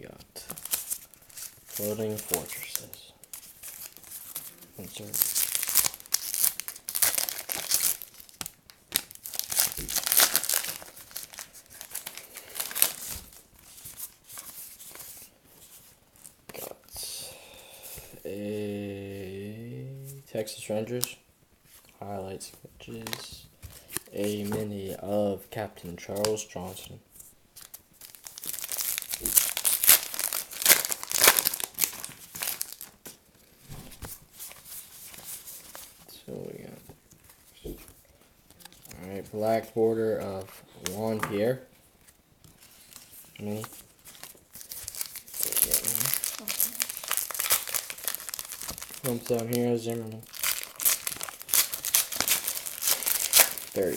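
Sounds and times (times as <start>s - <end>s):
foil wrapper tearing and crinkling: 5.0s - 13.4s, 28.0s - 33.0s, 43.5s - 53.9s.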